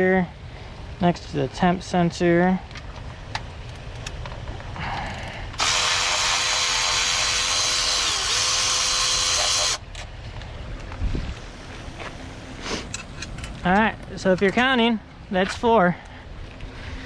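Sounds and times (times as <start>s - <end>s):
power tool spinning: 5.6s - 9.8s.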